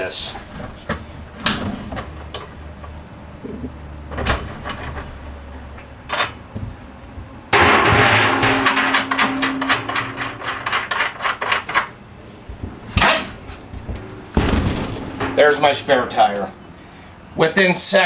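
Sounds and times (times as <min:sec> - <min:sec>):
metal hardware rattling: 0:07.6 - 0:11.9, 0:14.3 - 0:16.6.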